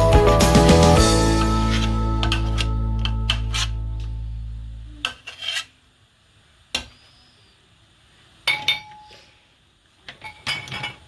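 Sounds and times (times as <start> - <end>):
music: 0.0 - 4.9
pots and utensils knocking: 1.7 - 3.5, 8.5 - 9.0, 10.1 - 11.0.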